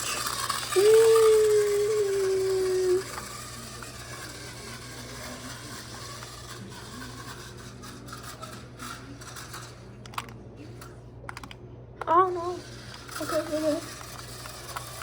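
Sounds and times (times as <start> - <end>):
rc car motor whining: 0.0 - 15.0
mechanical clicking and rattling: 11.3 - 15.0.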